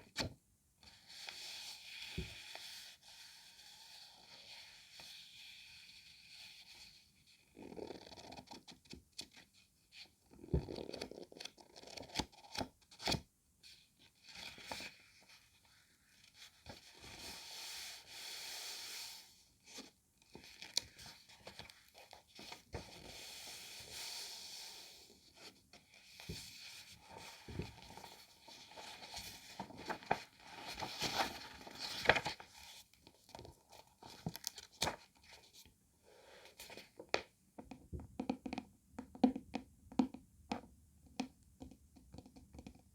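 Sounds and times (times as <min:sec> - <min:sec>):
book pages turning: 0:27.1 - 0:33.4, 0:34.0 - 0:35.1
paper crinkling: 0:28.7 - 0:32.4.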